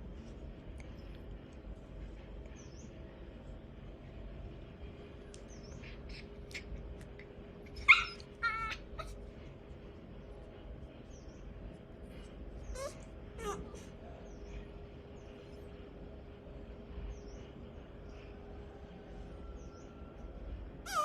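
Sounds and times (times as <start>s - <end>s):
faint clicks: 5.2s - 5.8s
puppy yelp and whimper: 7.7s - 9.2s, 12.7s - 13.9s.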